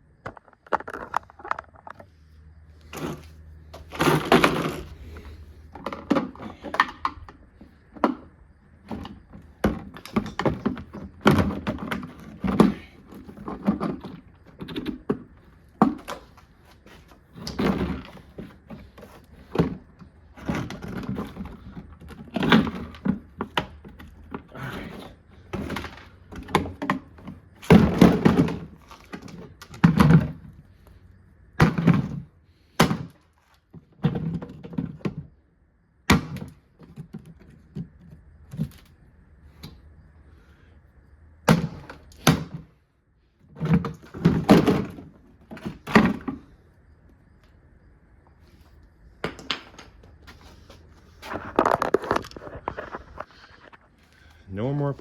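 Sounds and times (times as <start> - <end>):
washing machine being smashed: 25.5 - 30.4, 31.6 - 33.2, 36.1 - 36.6, 41.4 - 42.7, 43.6 - 46.4.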